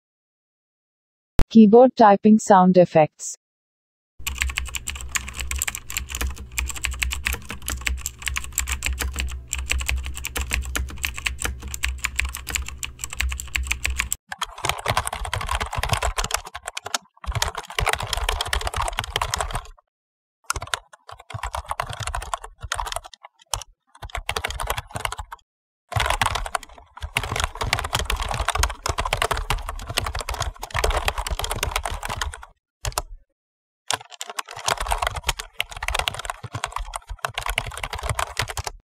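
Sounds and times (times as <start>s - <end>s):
steady low hum: 4.2s - 14.2s
typing on computer keyboard: 4.2s - 19.8s, 20.5s - 33.1s, 33.9s - 38.8s.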